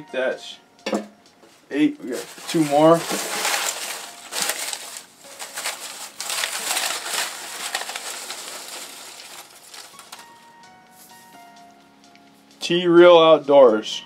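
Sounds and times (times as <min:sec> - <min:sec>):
paper slips rustling: 0:02.0 - 0:10.4.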